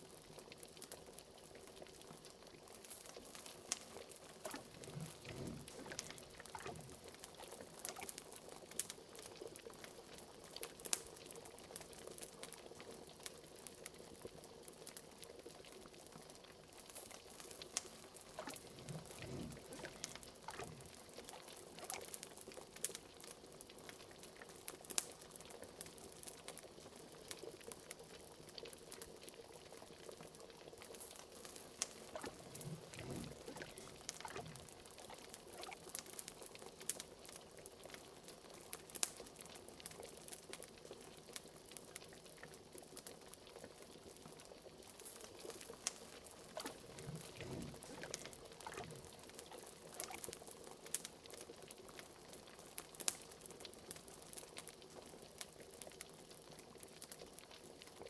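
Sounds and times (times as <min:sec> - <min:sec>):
liquid bubbling at a boil: 0:00.0 - 0:58.0
fire pops and crackles: 0:02.7 - 0:09.3, 0:16.9 - 0:23.1, 0:30.9 - 0:37.0, 0:44.9 - 0:51.1
deep gloops: 0:04.4 - 0:07.1, 0:18.4 - 0:21.0, 0:32.0 - 0:34.8, 0:46.5 - 0:49.1.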